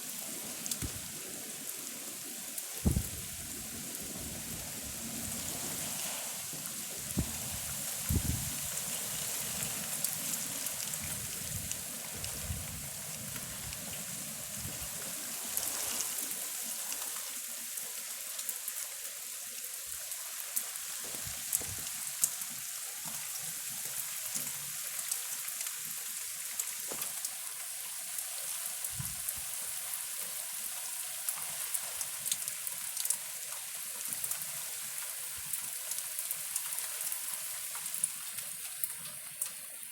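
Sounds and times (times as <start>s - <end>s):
heavy rain hissing: 0.0s - 17.1s
brief low thumps: 2.8s - 3.3s.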